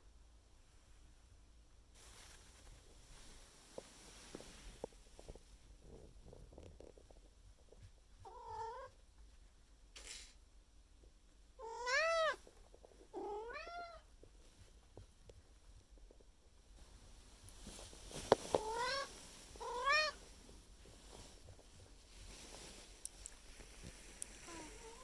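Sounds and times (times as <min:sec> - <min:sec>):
cat meowing: 0:08.2 - 0:08.9, 0:11.6 - 0:12.4, 0:13.2 - 0:14.0, 0:18.6 - 0:20.2.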